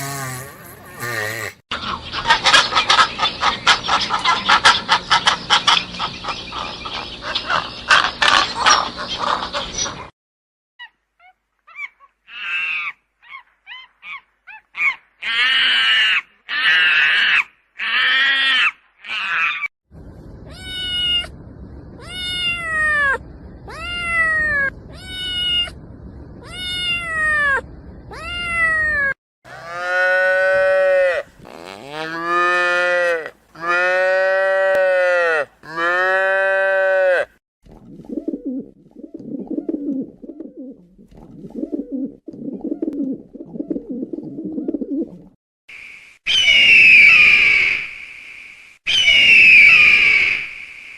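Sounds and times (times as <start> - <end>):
rising and falling animal calls: 20.4 - 25.8, 26.4 - 37.3, 46.2 - 48.0, 48.9 - 50.9.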